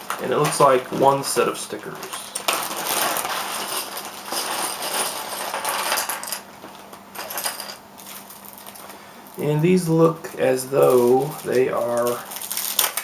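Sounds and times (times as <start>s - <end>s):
plastic pieces clattering and clicking: 0.1s - 6.4s, 10.8s - 13.0s.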